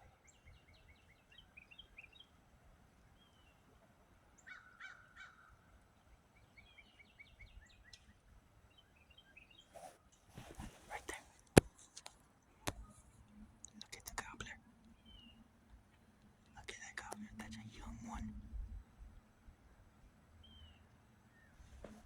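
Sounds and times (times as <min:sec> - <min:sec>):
songbird chirping: 0:00.0 - 0:22.0
rustling: 0:09.7 - 0:13.3, 0:21.6 - 0:22.0.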